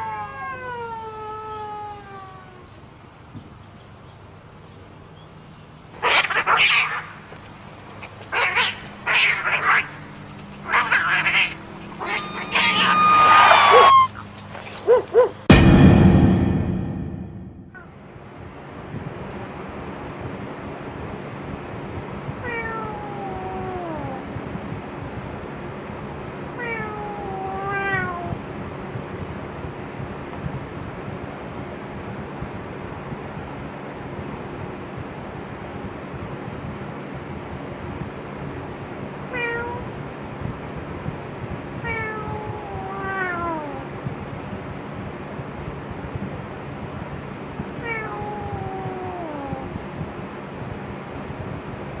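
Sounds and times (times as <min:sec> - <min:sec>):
harsh animal cries: 0:10.7 - 0:14.2.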